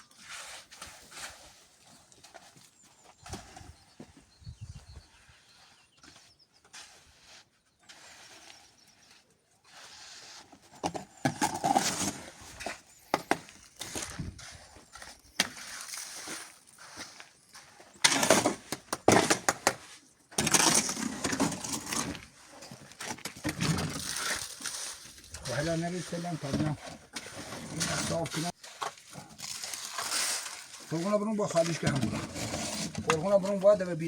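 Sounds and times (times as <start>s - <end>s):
hand tools scraping mortar: 5.4s - 34.0s.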